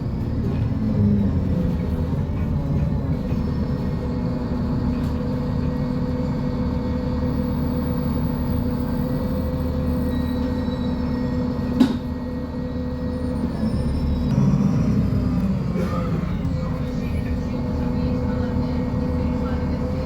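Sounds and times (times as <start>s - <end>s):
bus diesel engine droning: 0.0s - 20.0s.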